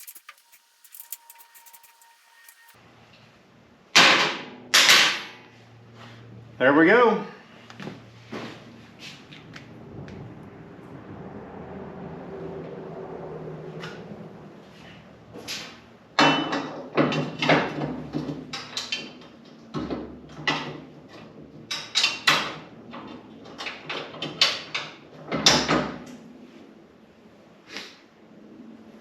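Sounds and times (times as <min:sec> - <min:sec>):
metal tools clattering: 0:00.0 - 0:02.8.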